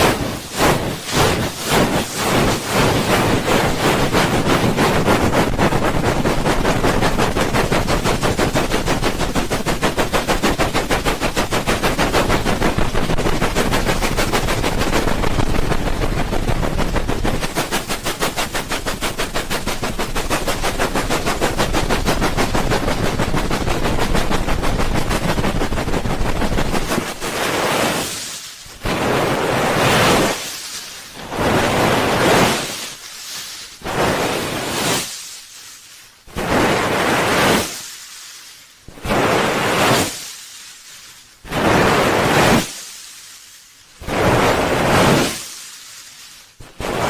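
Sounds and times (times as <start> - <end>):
hands rubbing a microphone: 0.0 - 28.2.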